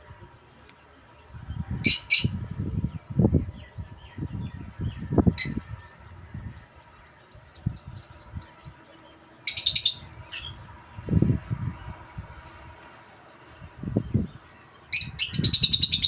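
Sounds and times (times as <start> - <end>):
parrot chirping and squawking: 1.9 - 2.4, 9.5 - 10.6.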